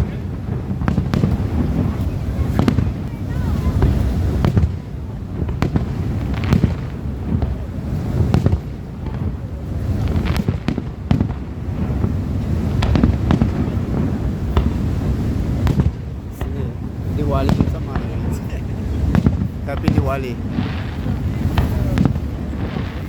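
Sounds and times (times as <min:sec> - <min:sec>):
fireworks crackling: 0:00.0 - 0:23.0
fireworks shells bursting: 0:10.1 - 0:23.0.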